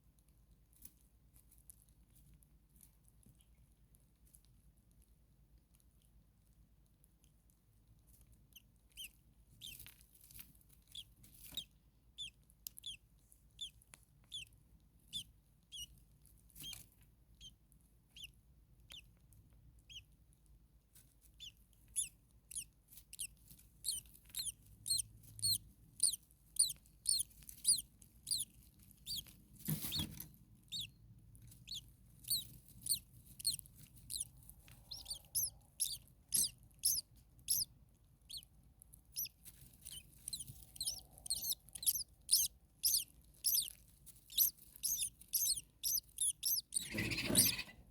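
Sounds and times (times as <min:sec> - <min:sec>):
starling chirping: 0:09.0 - 0:09.8, 0:11.5 - 0:13.0, 0:21.4 - 0:31.0, 0:31.6 - 0:37.7, 0:38.3 - 0:38.5, 0:39.1 - 0:47.7.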